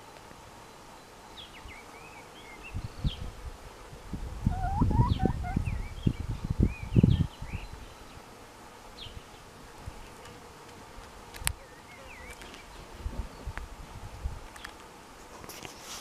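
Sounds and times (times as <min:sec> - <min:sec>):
chicken chirping: 0:04.5 - 0:07.2
rustling: 0:09.7 - 0:16.0.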